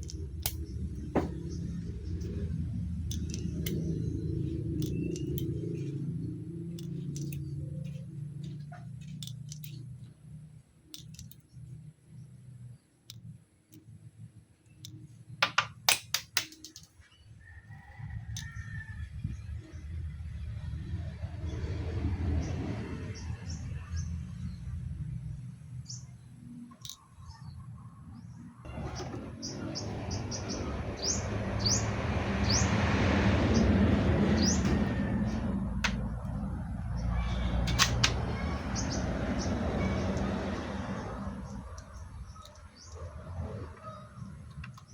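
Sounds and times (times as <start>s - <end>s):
low steady rumble: 0.0s - 15.4s, 18.1s - 44.9s
small birds chirping: 0.0s - 15.4s, 22.4s - 32.8s, 33.4s - 44.9s
sharp clicks: 2.2s - 6.1s, 6.7s - 7.8s, 10.8s - 11.6s.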